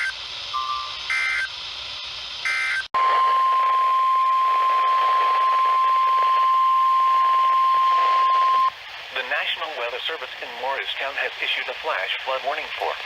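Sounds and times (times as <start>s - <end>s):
steady warning alarm tone: 0.0s - 1.5s, 2.4s - 8.7s
radio hiss: 2.4s - 13.0s
warbling digital data tones: 2.5s - 8.7s.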